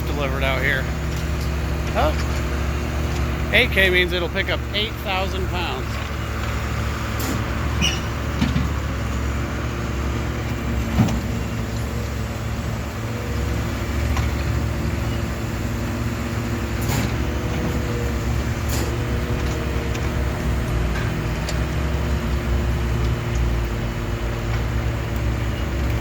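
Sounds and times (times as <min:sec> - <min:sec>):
diesel engine hum: 0:00.0 - 0:26.0
knocks and clanks: 0:07.2 - 0:09.0.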